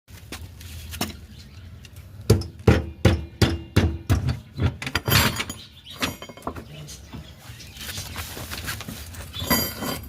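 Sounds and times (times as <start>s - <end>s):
metal striking metal knocks: 2.3s - 6.7s.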